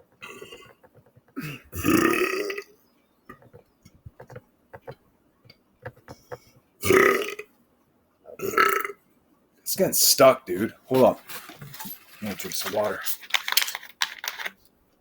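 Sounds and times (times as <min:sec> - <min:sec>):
man belching: 0:00.2 - 0:00.7, 0:01.4 - 0:02.7, 0:06.8 - 0:07.5, 0:08.3 - 0:09.0.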